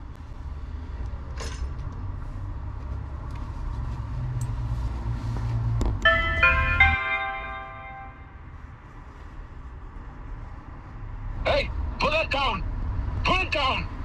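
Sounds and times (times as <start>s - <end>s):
street noise rumble: 0.0s - 14.0s
doorbell electronic chime: 6.0s - 8.4s.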